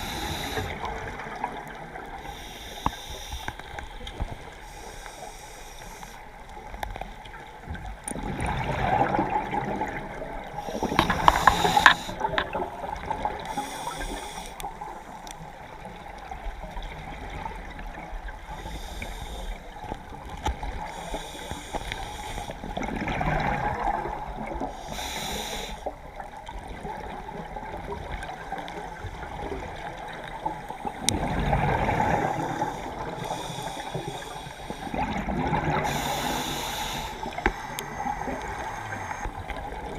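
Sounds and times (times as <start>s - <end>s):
regulator inhalation hiss: 0.0s - 1.0s, 2.2s - 4.0s, 4.6s - 6.2s, 10.6s - 12.4s, 13.4s - 15.1s, 18.6s - 19.7s, 20.9s - 22.6s, 24.7s - 25.9s, 32.2s - 35.0s, 35.8s - 39.5s
gurgling exhaled bubbles: 8.1s - 14.1s, 22.7s - 24.7s, 29.2s - 39.9s.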